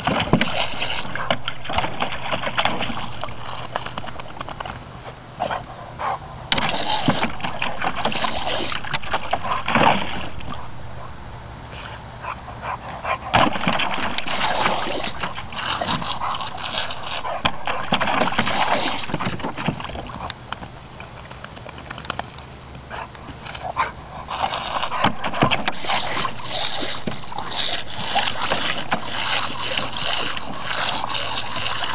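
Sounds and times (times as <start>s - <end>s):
garden hose spraying: 0.0s - 5.6s, 6.5s - 10.2s, 13.6s - 31.9s
dog snapping at water: 0.0s - 10.7s, 12.7s - 31.9s
water splashes: 0.0s - 31.9s.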